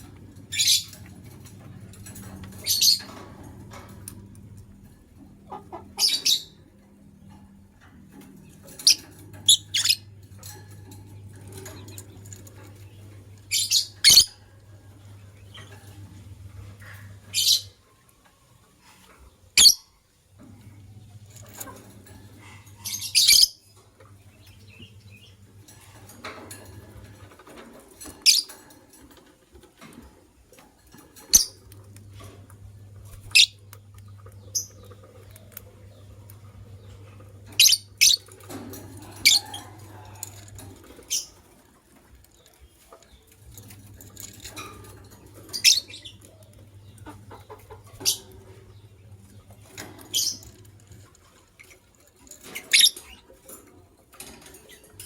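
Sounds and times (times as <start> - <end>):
lovebirds chirping: 33.0 - 38.6.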